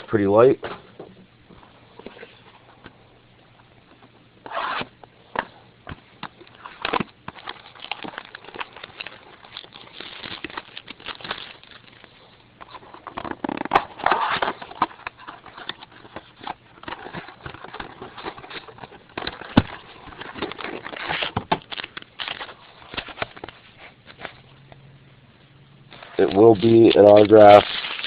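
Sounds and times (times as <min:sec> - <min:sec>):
foil wrapper crinkling: 0:06.5 - 0:12.3, 0:13.0 - 0:23.7, 0:25.9 - 0:28.0.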